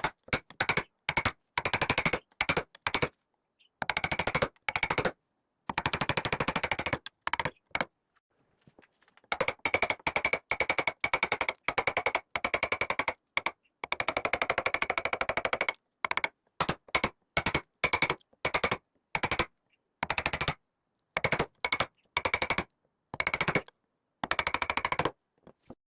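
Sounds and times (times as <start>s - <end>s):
rapid drumming on wood: 9.3s - 20.6s, 21.2s - 22.6s, 23.2s - 25.1s.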